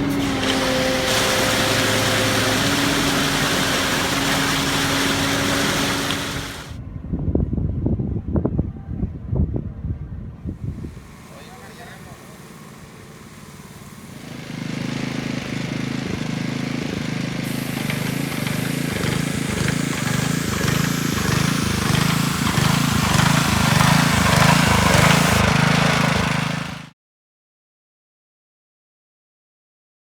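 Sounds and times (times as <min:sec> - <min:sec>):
diesel machinery engine clattering: 0:00.0 - 0:06.8, 0:10.8 - 0:26.9.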